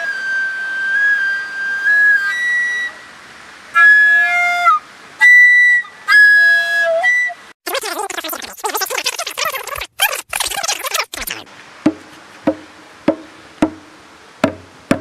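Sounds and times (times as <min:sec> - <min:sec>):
flute playing held high notes: 0:00.0 - 0:03.1, 0:03.8 - 0:07.4.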